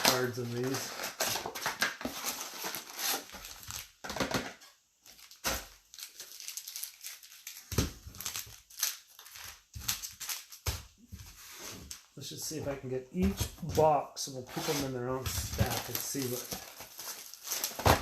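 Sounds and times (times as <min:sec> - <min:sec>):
card pack wrappers crinkling: 0:00.0 - 0:04.2, 0:05.0 - 0:10.8, 0:14.6 - 0:18.0.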